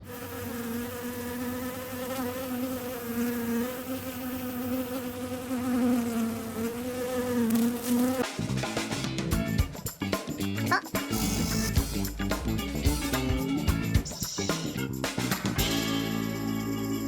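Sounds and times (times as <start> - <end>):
bees buzzing: 0.0 - 8.2
music: 8.2 - 17.0.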